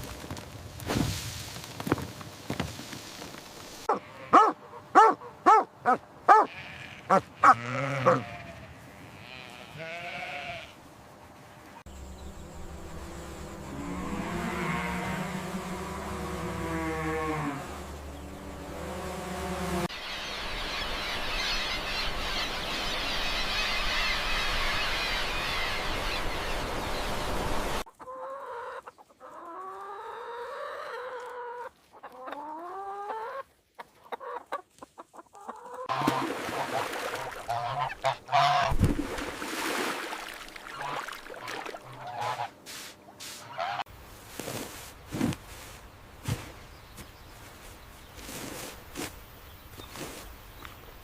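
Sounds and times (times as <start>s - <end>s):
fowl calling: 3.9s - 8.6s, 34.1s - 38.8s, 40.6s - 43.9s.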